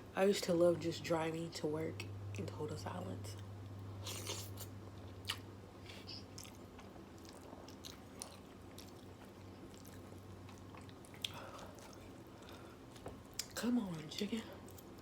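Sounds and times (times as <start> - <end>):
steady low hum: 0.0 - 15.0
person chewing food: 4.0 - 15.0.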